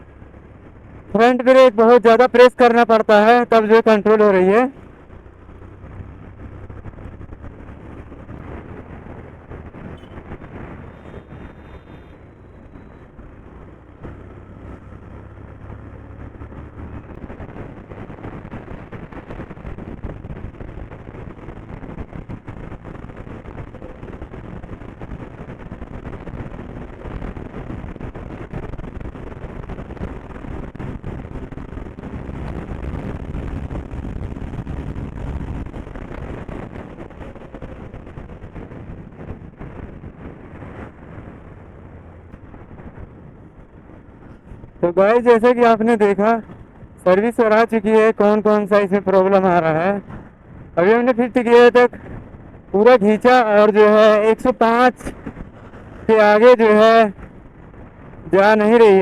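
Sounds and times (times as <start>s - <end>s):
wind and road noise: 0.0s - 59.0s
motorcycle engine running: 4.7s - 44.9s.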